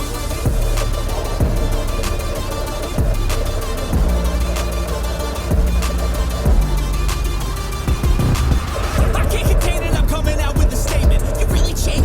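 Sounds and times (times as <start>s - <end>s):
kick drum: 0.0s - 1.9s, 3.0s - 4.4s, 5.5s - 6.8s, 7.9s - 12.0s
deep sustained bass: 0.0s - 12.0s
hip hop instrumental: 0.0s - 12.0s.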